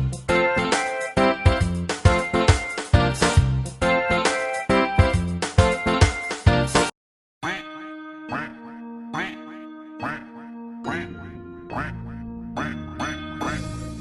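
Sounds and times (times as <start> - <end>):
cheerful children's song music: 0.0 - 14.0
cartoon duck quacking: 7.4 - 11.1, 11.7 - 12.8.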